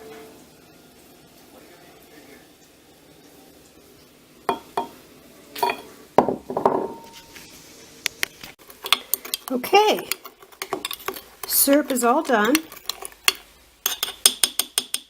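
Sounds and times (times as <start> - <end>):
glass jar and kitchenware clinking: 4.5 - 5.0, 5.6 - 5.9, 6.5 - 7.3, 10.2 - 11.7, 12.4 - 15.0.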